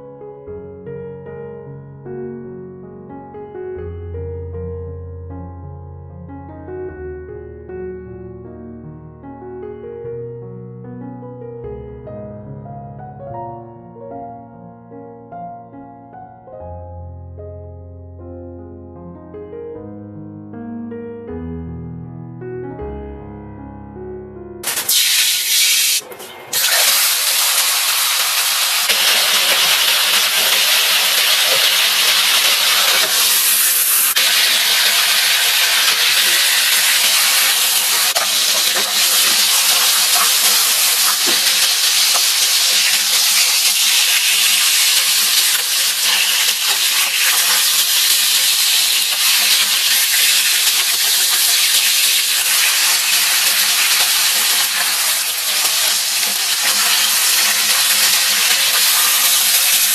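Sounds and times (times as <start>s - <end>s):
food sizzling in hot oil: 24.6s - 59.9s.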